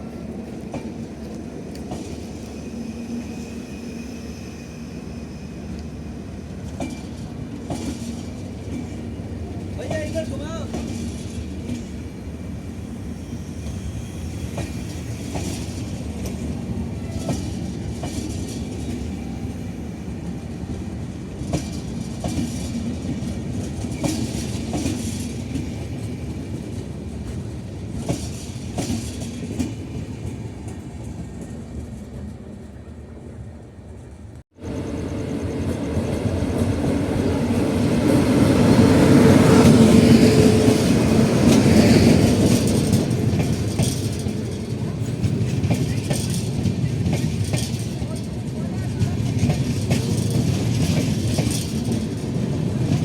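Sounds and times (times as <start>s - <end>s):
train rumbling along track: 0.0s - 53.0s
wheels clicking over rail joints: 39.4s - 53.0s.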